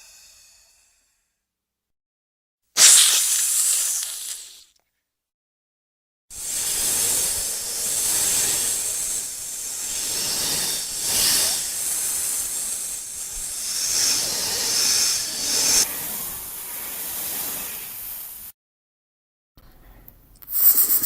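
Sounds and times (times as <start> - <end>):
snake hissing: 2.8 - 4.7, 6.4 - 18.5, 20.5 - 21.0.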